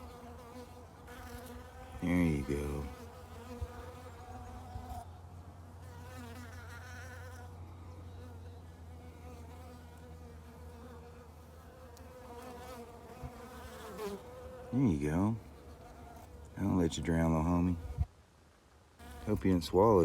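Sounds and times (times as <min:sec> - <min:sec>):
bees buzzing: 0:05.7 - 0:18.1.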